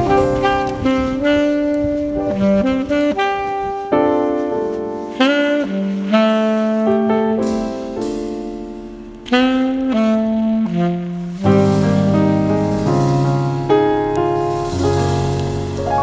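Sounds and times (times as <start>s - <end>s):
slow jazz music: 0.0s - 16.0s.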